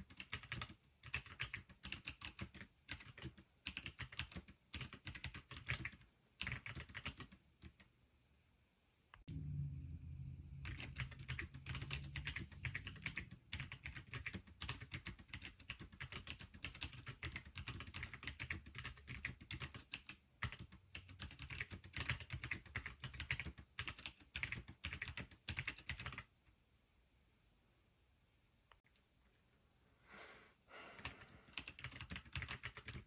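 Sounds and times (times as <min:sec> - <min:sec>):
mechanical keyboard typing: 0:00.0 - 0:07.9, 0:10.6 - 0:26.3, 0:31.0 - 0:33.0.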